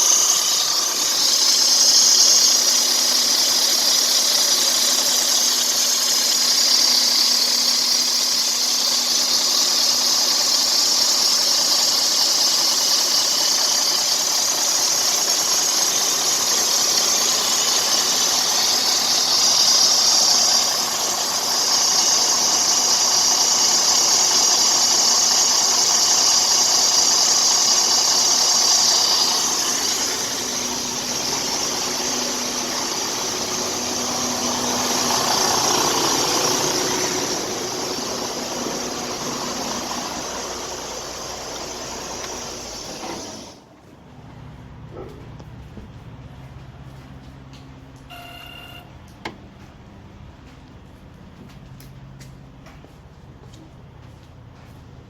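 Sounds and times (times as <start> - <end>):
high hissing belt noise: 0.0 - 43.6
diesel engine idling: 0.0 - 52.7.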